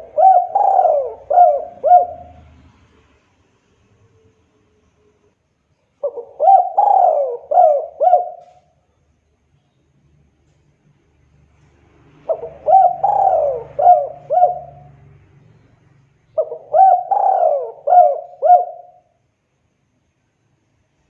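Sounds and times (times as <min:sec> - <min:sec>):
dove cooing: 0:00.0 - 0:02.6, 0:06.0 - 0:08.7, 0:12.2 - 0:15.1, 0:16.4 - 0:19.1.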